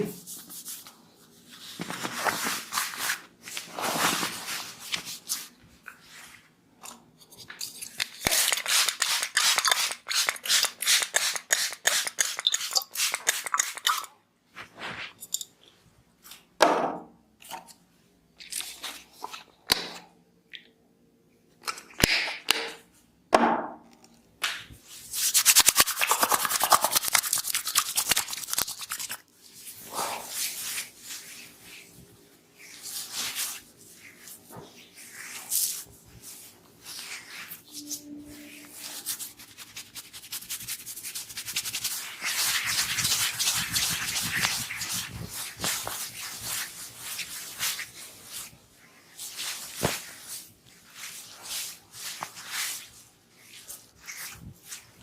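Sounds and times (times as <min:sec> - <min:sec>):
hands slapping and tapping head: 0:21.6 - 0:22.8, 0:24.4 - 0:24.8.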